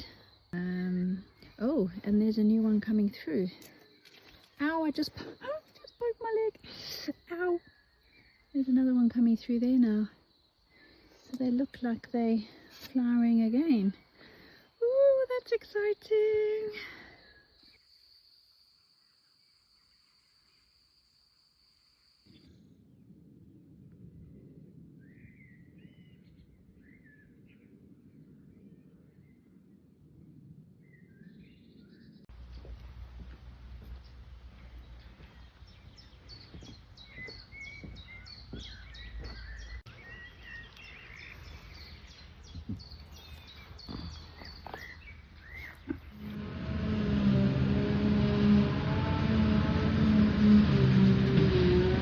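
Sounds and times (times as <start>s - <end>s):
birds chirping: 30.8s - 52.0s
low rumble: 46.1s - 52.0s.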